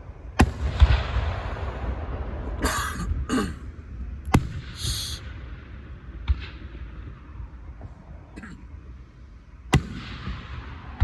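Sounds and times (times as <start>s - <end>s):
fireworks bangs and crackling: 0.2s - 3.2s, 3.9s - 8.2s, 9.6s - 11.0s.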